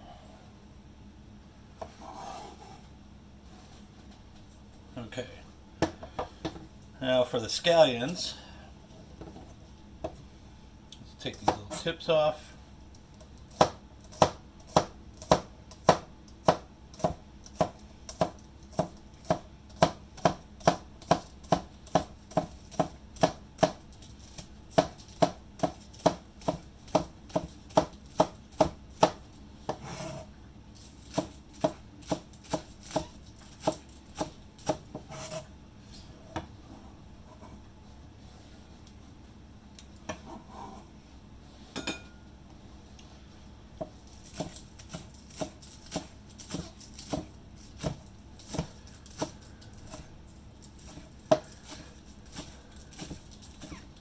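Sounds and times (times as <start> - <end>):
knife scrape: 1.8 - 2.9, 29.7 - 30.3, 35.0 - 37.6, 40.1 - 42.0
knife chopping on cutting board: 13.5 - 23.8, 24.4 - 30.3, 31.1 - 35.5, 43.8 - 50.1, 50.8 - 53.8.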